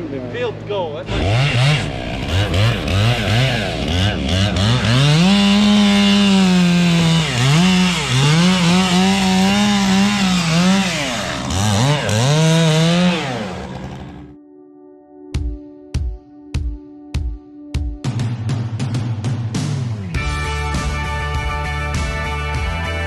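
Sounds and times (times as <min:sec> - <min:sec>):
chainsaw engine revving: 0:01.1 - 0:14.4.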